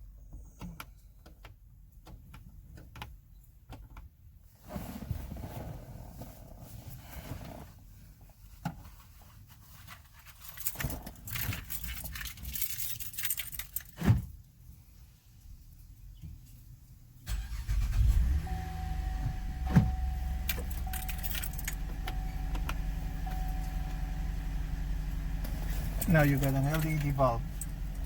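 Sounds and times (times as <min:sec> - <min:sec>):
plastic lens clicking and clattering: 0:10.2 - 0:14.0.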